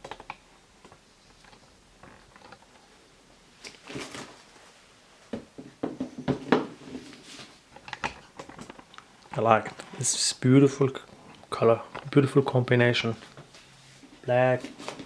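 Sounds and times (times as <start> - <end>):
handling scuffs and rustles: 3.6 - 4.9, 6.4 - 7.7, 13.1 - 15.0.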